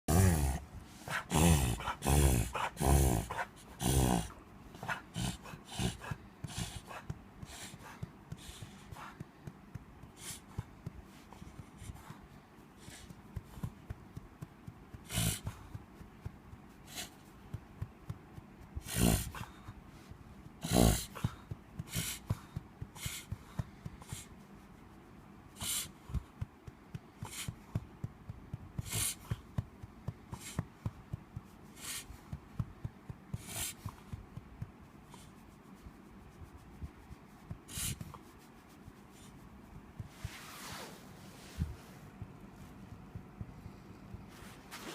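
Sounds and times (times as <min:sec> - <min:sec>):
animal wheezing and snorting: 0:00.1 - 0:24.4, 0:25.5 - 0:35.4, 0:37.6 - 0:38.2.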